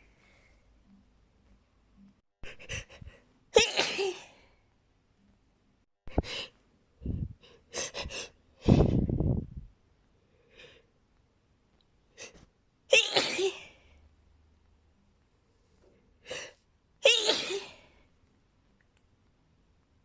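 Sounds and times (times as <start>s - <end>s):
person sneezing: 3.6s - 4.4s, 12.2s - 13.8s, 16.4s - 17.9s.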